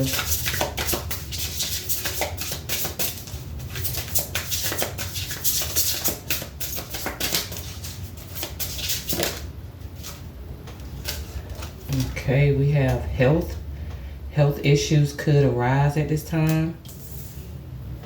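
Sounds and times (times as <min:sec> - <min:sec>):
cards being shuffled: 0:00.0 - 0:12.1.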